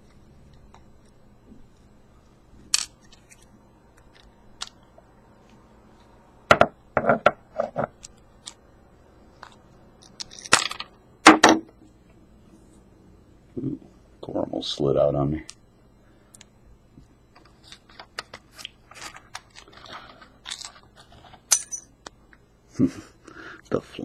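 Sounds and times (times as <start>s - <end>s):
metal lock parts clicking and clattering: 20.4s - 21.9s.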